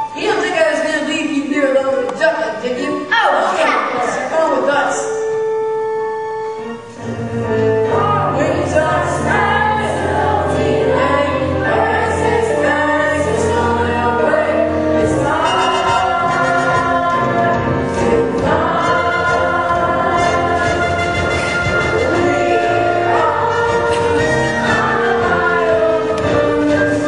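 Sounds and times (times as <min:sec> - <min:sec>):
choir singing: 0:07.0 - 0:27.0.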